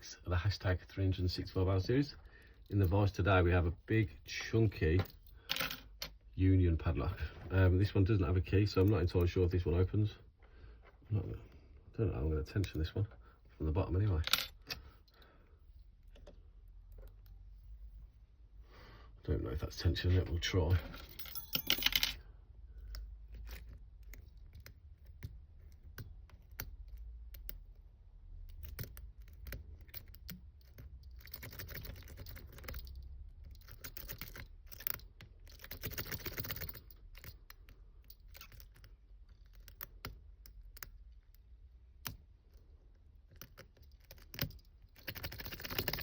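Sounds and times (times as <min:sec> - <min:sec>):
lock pick scraping: 0:22.8 - 0:27.8, 0:28.4 - 0:41.4.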